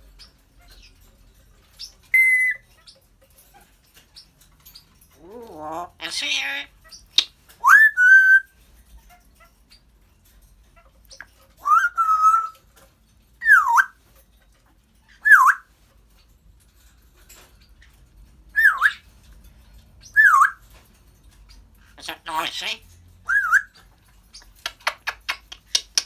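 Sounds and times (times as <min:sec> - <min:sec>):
parrot whistling: 0:02.1 - 0:02.6, 0:05.4 - 0:08.5, 0:11.6 - 0:12.6, 0:13.4 - 0:14.0, 0:15.2 - 0:15.6, 0:18.6 - 0:19.0, 0:20.2 - 0:20.6, 0:22.0 - 0:23.8.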